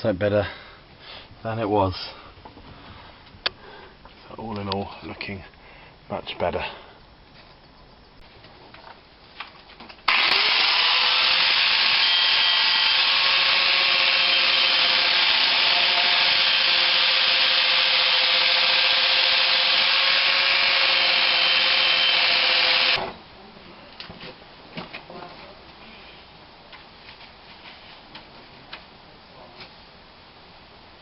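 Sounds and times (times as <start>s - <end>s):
power tool motor whine: 10.1s - 23.1s.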